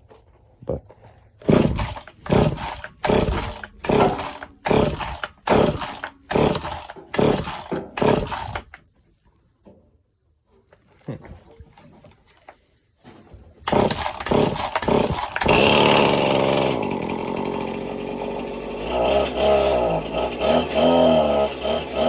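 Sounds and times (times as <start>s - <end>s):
recoil starter cord pulls: 1.4s - 8.8s, 13.6s - 22.0s
small engine cranking: 1.4s - 8.8s, 13.6s - 22.0s.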